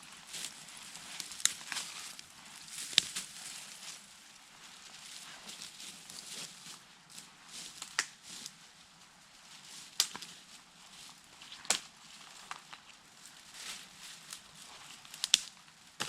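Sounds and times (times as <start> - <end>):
twigs rustling: 0.0 - 16.0
dry branches snapping: 0.3 - 3.7, 7.7 - 8.5, 10.0 - 10.4, 11.4 - 12.9, 14.2 - 16.0.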